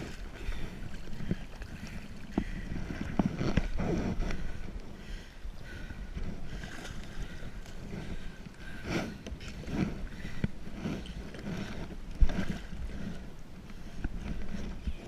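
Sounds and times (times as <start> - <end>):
water sloshing against kayak hull: 0.0 - 15.0.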